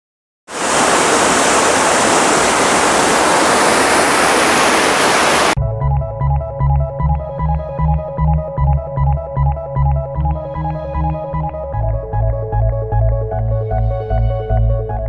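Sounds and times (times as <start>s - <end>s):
waterfall rushing: 0.5s - 5.6s
electronic keyboard music: 5.5s - 15.0s.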